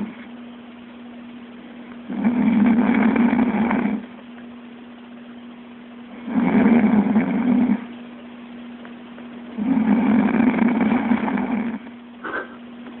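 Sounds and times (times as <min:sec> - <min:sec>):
chicken snoring: 0:00.0 - 0:00.3, 0:02.1 - 0:04.1, 0:06.1 - 0:07.9, 0:09.6 - 0:12.5.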